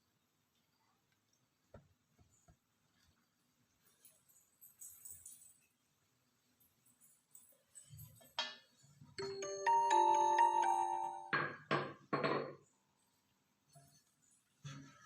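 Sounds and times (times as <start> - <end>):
bell-like chiming jingle: 9.2 - 11.4.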